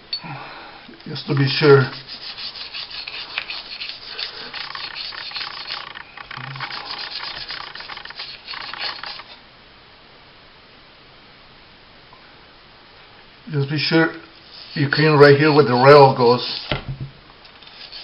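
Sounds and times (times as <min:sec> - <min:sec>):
small brush scrubbing metal: 0:01.1 - 0:09.4, 0:13.8 - 0:16.7, 0:17.5 - 0:18.0.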